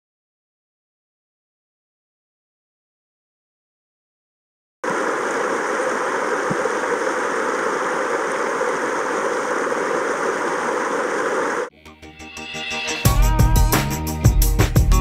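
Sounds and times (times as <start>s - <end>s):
rushing stream water: 4.8s - 11.7s.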